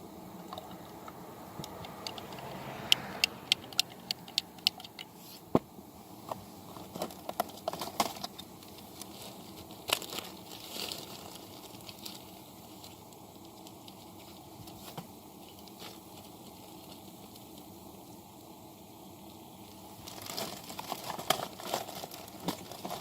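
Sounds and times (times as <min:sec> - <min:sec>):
sharp clicks and small knocks: 0:00.5 - 0:05.6.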